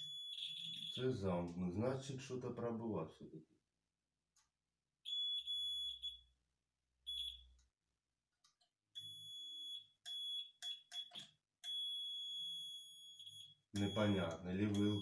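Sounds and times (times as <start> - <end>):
multimeter continuity buzzer beeping: 0.0 - 1.0, 5.1 - 6.2, 7.1 - 7.4, 9.0 - 15.0.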